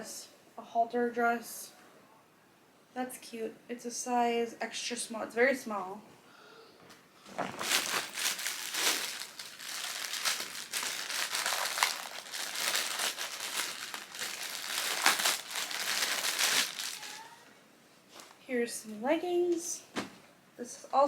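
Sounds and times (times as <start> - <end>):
plastic bag crinkling: 7.3 - 17.4.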